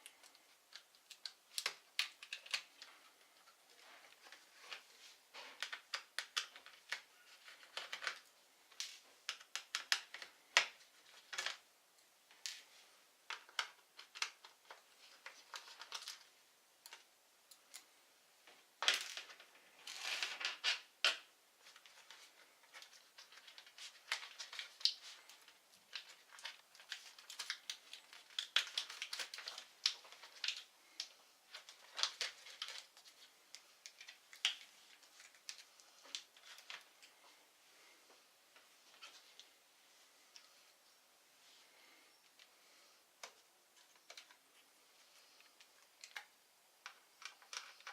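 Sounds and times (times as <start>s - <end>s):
small tools clicking on plastic: 0.0s - 3.6s, 5.4s - 11.6s, 20.0s - 33.2s, 45.4s - 47.9s.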